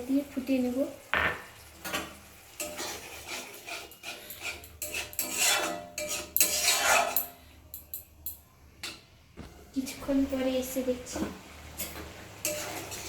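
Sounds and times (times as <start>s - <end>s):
spoon scraping metal pan: 1.8s - 8.0s, 11.8s - 13.0s.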